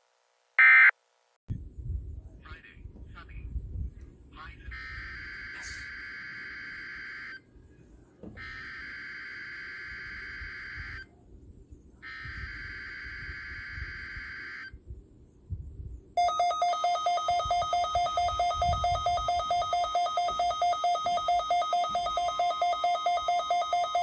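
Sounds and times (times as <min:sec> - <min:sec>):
fast-pulsing electronic alarm beeping: 0:16.2 - 0:24.0.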